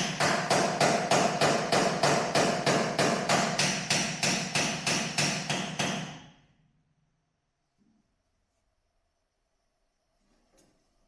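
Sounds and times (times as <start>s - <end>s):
hammer blows on sheet metal: 0.0s - 6.4s.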